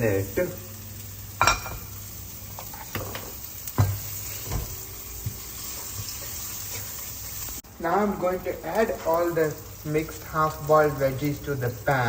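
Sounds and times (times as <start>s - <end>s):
vegetables sizzling in oil: 0.0s - 12.0s.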